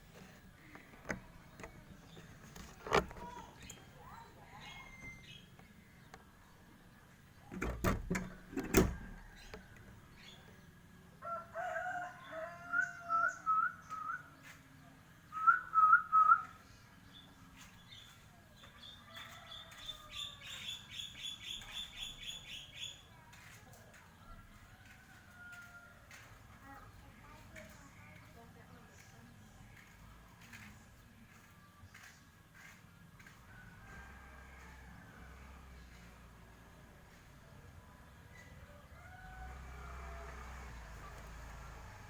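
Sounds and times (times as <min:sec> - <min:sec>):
bird singing whistled notes: 0:12.7 - 0:14.4, 0:15.3 - 0:17.3.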